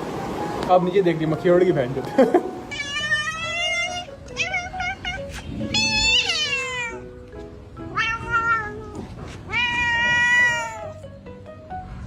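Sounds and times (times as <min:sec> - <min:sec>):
cat meowing: 0:02.7 - 0:11.0.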